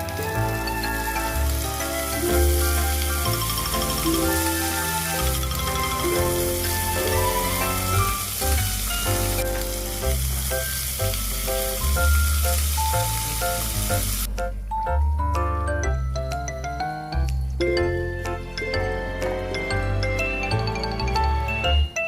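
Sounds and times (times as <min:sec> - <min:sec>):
food sizzling in oil: 0:00.0 - 0:14.3
background music with bass: 0:00.0 - 0:22.0.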